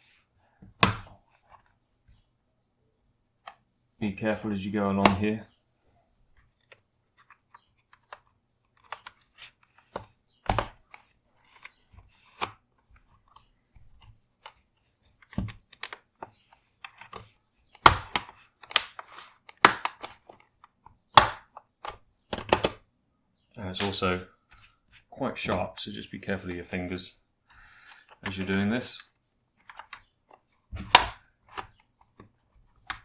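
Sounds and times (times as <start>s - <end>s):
plastic clips clicking and snapping: 17.8s - 22.8s, 30.8s - 32.3s.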